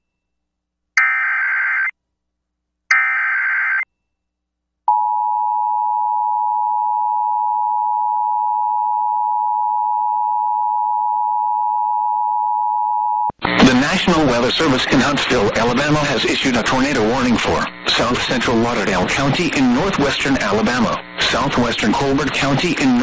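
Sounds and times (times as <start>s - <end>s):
raspy data bursts: 13.5s - 23.0s.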